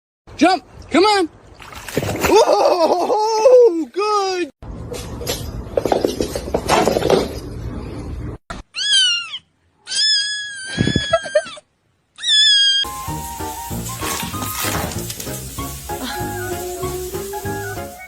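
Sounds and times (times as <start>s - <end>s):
cat meowing: 8.8s - 11.6s, 12.2s - 12.9s
music: 12.9s - 18.0s
rustling: 12.9s - 18.0s.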